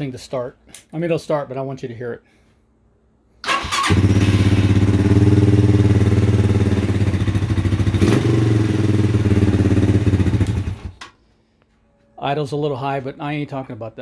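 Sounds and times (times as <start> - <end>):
motorcycle engine idling: 3.8 - 10.9.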